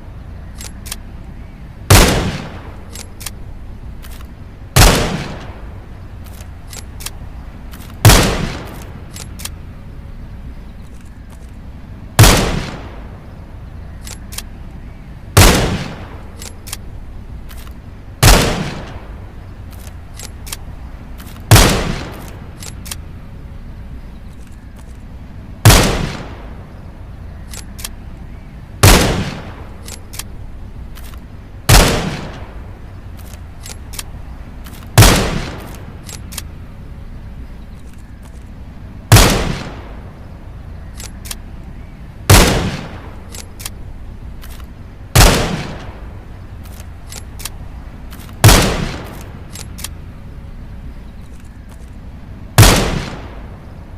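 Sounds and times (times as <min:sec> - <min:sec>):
rifle shots echoing: 0:01.9 - 0:09.7, 0:12.2 - 0:13.2, 0:15.3 - 0:17.0, 0:17.6 - 0:23.2, 0:25.6 - 0:26.8, 0:28.8 - 0:30.4, 0:31.0 - 0:36.7, 0:39.1 - 0:40.3, 0:42.2 - 0:50.6, 0:52.5 - 0:53.6
faint light clicks: 0:27.4 - 0:28.3, 0:46.5 - 0:48.4.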